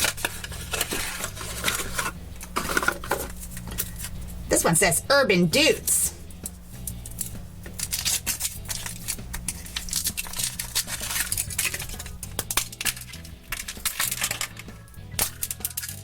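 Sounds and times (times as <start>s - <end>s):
foil wrapper crinkling: 0.0s - 4.2s, 6.4s - 16.0s.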